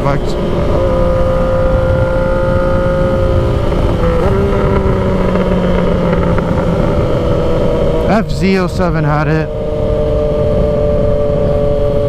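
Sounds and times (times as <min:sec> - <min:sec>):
wind noise: 0:00.0 - 0:12.0
motorcycle engine pulling: 0:00.5 - 0:08.8.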